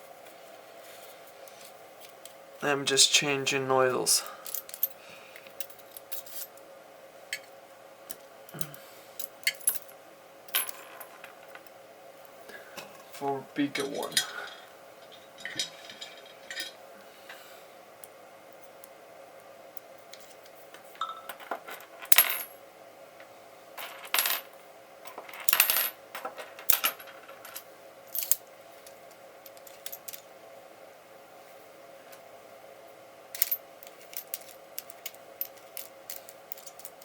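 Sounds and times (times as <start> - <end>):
faint steady hum: 0.0 - 37.0
small metal parts clinking: 4.4 - 5.0, 5.6 - 6.6, 8.1 - 9.9, 25.1 - 28.4, 29.5 - 30.2, 33.4 - 37.0.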